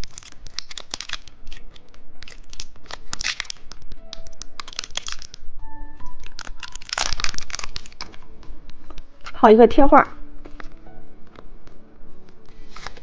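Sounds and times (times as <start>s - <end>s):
plastic wrapper crinkling: 0.0s - 8.3s, 12.6s - 13.0s.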